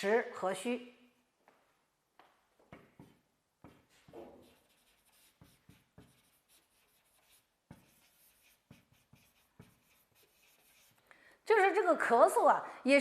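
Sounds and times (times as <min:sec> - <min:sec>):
pen scratching strokes: 0:02.7 - 0:11.1.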